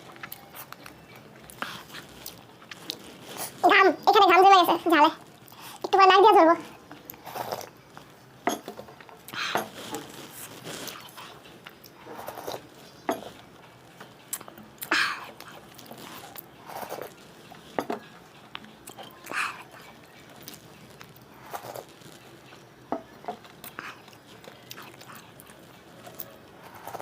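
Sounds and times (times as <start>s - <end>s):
wet chewing and mouth smacking: 9.0s - 22.6s, 23.4s - 27.0s.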